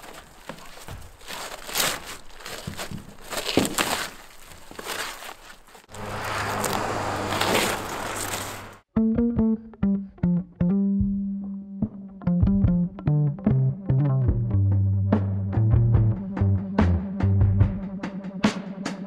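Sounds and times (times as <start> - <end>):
roofing debris crinkling and knocking: 0.0 - 5.9
plucked bass and guitar music: 8.9 - 18.0.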